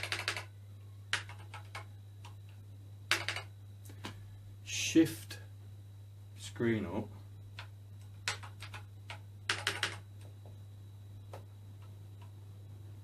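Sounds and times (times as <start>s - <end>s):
computer keyboard keystrokes: 0.0s - 0.5s, 1.1s - 2.4s, 3.1s - 3.5s, 7.6s - 10.3s
steady low hum: 0.0s - 13.0s.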